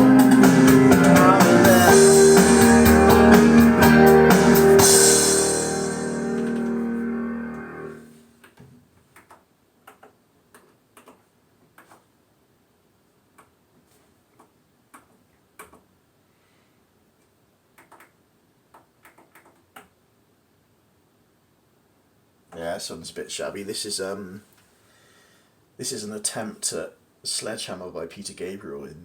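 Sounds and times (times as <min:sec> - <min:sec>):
keyboard and backing-track music: 0:00.0 - 0:08.2.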